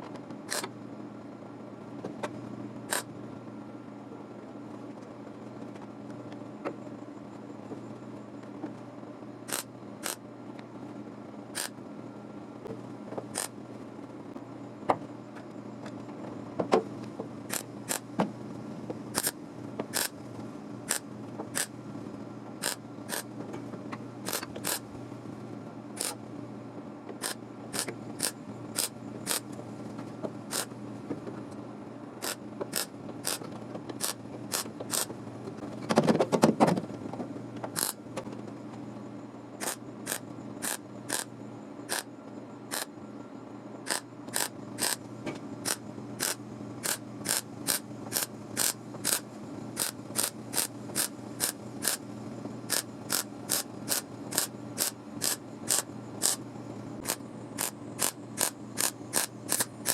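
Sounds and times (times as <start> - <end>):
sharp metallic clicks: 9.5 - 10.2, 17.5 - 18.1, 19.2 - 20.1, 26.0 - 26.2, 30.5 - 30.7, 37.8 - 38.0, 39.6 - 41.3, 43.9 - 45.0, 45.6 - 49.2, 52.7 - 56.4, 57.0 - 59.9.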